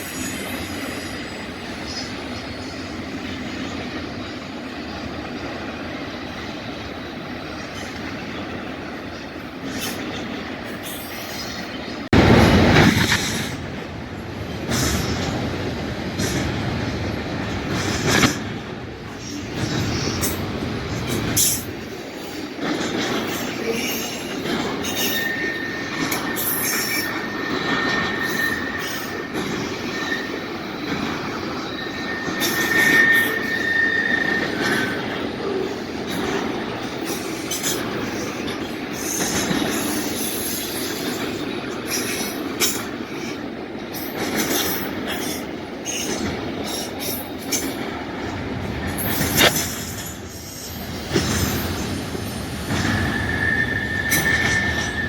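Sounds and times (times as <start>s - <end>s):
train wheels rumbling on rails: 0.0s - 55.0s
high wheel squeal: 23.8s - 35.3s, 51.4s - 55.0s.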